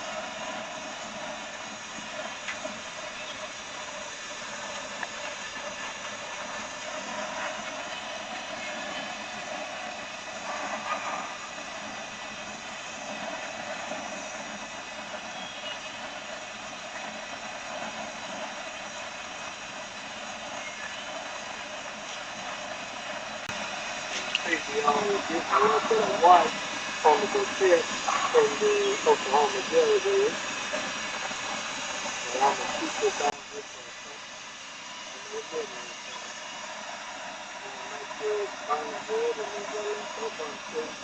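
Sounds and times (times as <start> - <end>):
gas torch flame hissing: 0.0 - 41.0.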